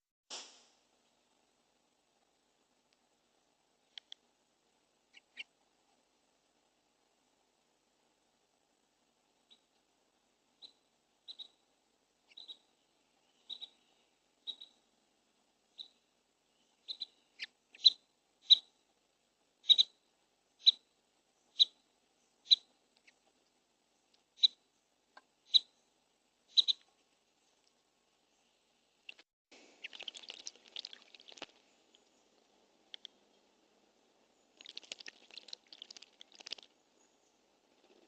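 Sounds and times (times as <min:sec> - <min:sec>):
bird chirping: 0:05.1 - 0:05.6, 0:09.4 - 0:09.8, 0:10.5 - 0:14.9, 0:15.7 - 0:18.8, 0:19.6 - 0:23.3, 0:23.9 - 0:29.2, 0:29.8 - 0:38.0.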